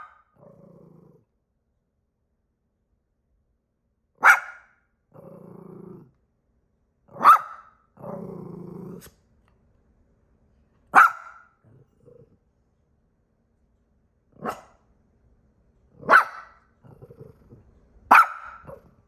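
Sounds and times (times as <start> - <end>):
dog barking sharply: 0.0 - 0.2, 4.2 - 4.8, 7.1 - 7.8, 10.9 - 11.5, 14.4 - 14.8, 16.0 - 16.6, 18.1 - 18.8
dog growling: 0.4 - 1.3, 5.1 - 6.2, 8.0 - 9.1, 11.6 - 12.4, 16.8 - 17.7, 18.6 - 19.0.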